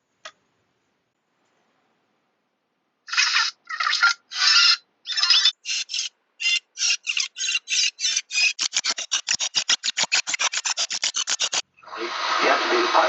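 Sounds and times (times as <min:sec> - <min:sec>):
radio static hiss bursts: 0:11.9 - 0:13.0.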